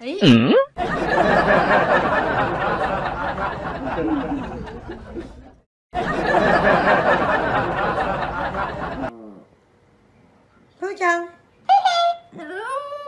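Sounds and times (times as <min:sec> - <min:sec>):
people chattering and laughing: 0:00.8 - 0:09.1.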